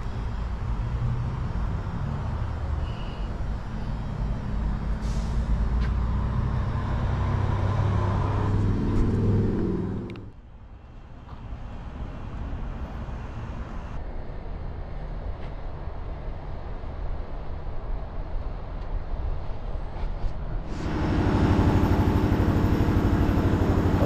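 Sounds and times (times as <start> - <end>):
vehicle engine running: 20.7 - 24.0.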